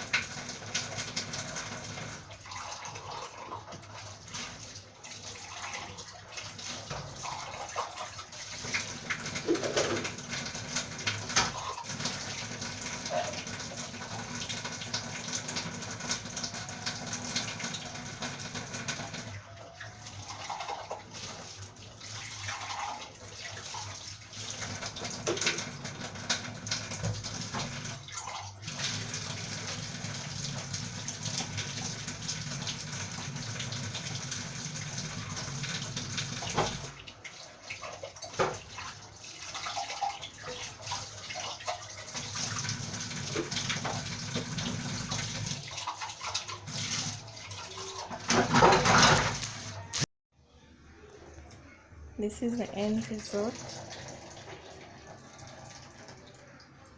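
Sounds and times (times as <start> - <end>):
water running from tap: 0.0 - 50.1, 52.2 - 56.9
dishes clinking: 9.4 - 10.1.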